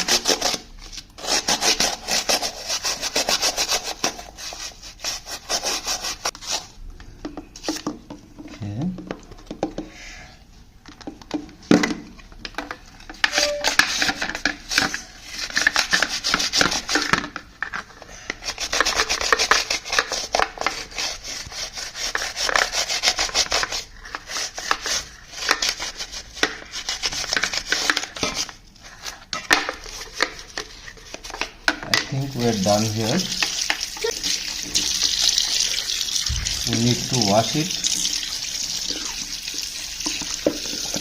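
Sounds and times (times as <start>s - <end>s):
brush scrubbing a filter: 0.0s - 6.7s, 13.8s - 17.2s, 18.2s - 29.2s, 34.8s - 41.0s.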